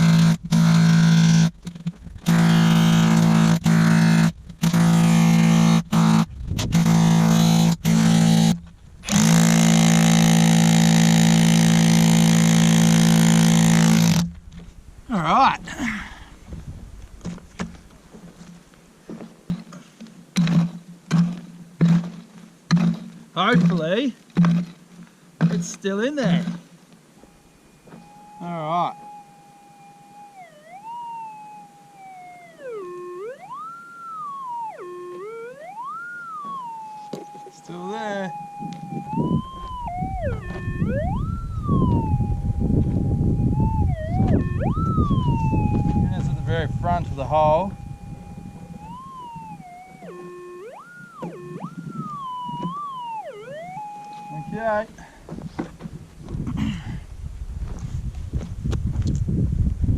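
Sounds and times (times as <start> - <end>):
metal detector threshold tone: 27.2 - 54.9.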